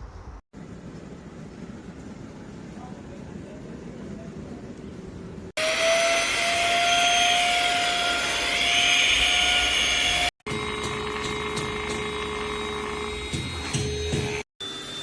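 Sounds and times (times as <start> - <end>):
vacuum cleaner motor whine: 5.6 - 15.0.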